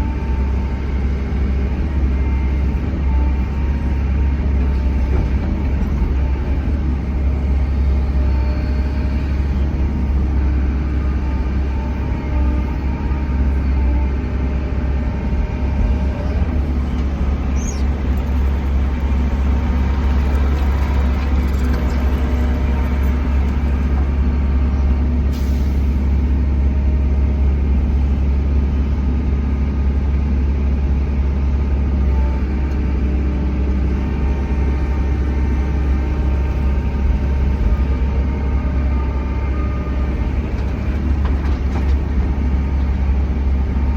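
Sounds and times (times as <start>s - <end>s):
excavator diesel engine droning: 0.0s - 43.9s
faint brief squeak: 16.9s - 18.3s.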